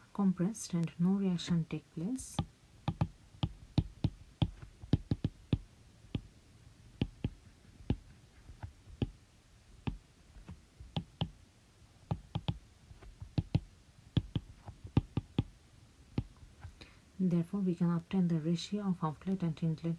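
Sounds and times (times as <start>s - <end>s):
sharp clicks and taps: 2.4s - 6.3s, 7.0s - 8.0s, 10.8s - 11.4s, 12.1s - 15.5s.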